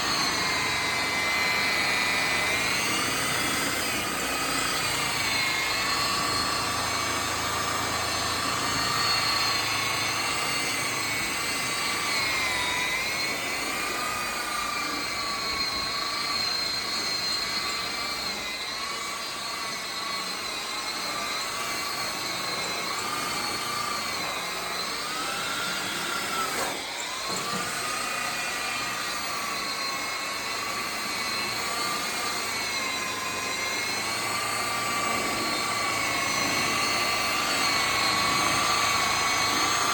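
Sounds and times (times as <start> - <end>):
electric polisher whining: 0.0 - 39.9.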